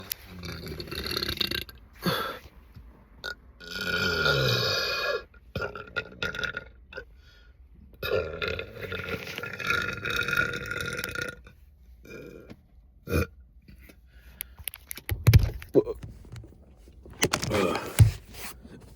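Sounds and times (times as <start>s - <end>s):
person burping: 0.3s - 2.4s, 3.2s - 7.1s, 8.0s - 11.4s, 12.0s - 13.4s.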